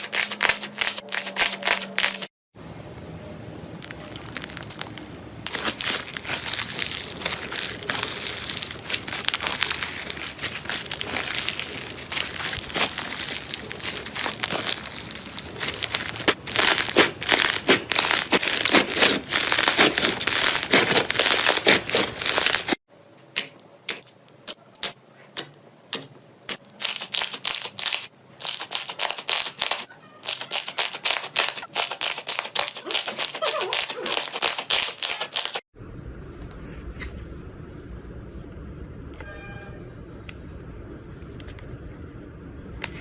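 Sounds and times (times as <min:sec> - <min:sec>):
slime crackling and popping: 0:00.0 - 0:02.3, 0:03.8 - 0:22.8, 0:26.8 - 0:35.6.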